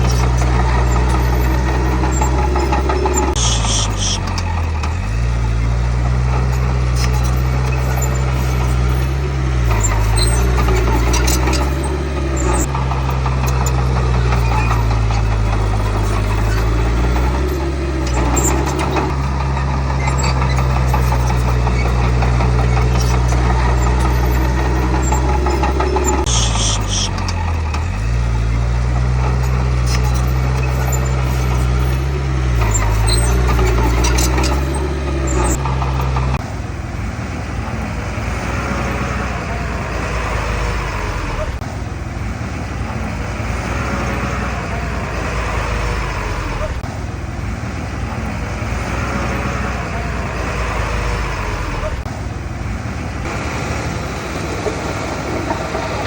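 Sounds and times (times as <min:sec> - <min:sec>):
machine clanks: 0:00.0 - 0:05.2, 0:05.9 - 0:36.4
high squeal: 0:00.0 - 0:36.4
bulldozer diesel engine running hard: 0:00.0 - 0:56.0.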